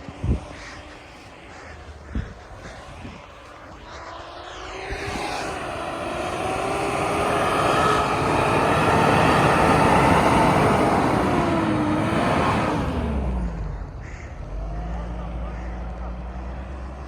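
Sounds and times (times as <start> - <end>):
dense rush of noise: 0.0 - 17.0
off-road vehicle engine: 3.5 - 17.0.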